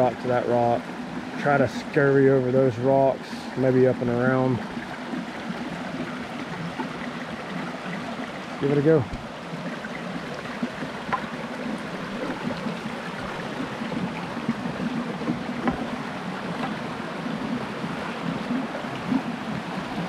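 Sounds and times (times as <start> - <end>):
creek rushing over rocks: 0.0 - 20.0
light knocks: 15.2 - 15.9.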